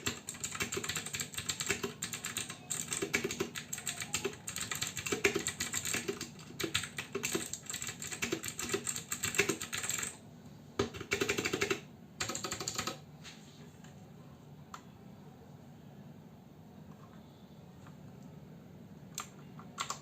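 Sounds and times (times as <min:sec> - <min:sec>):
mechanical keyboard typing: 0:00.0 - 0:10.2, 0:10.8 - 0:13.0, 0:19.2 - 0:20.0.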